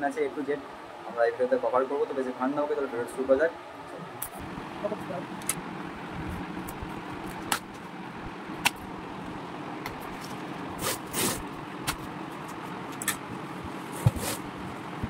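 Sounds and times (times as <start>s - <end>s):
traffic-like hum: 0.0s - 15.0s
cardboard scraping swishes: 10.1s - 12.7s, 13.7s - 14.7s.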